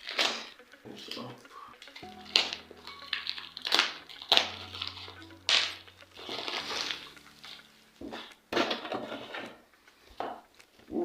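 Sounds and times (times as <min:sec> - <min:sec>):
quiet background music: 0:00.0 - 0:11.0
packaging rustling: 0:01.8 - 0:09.7.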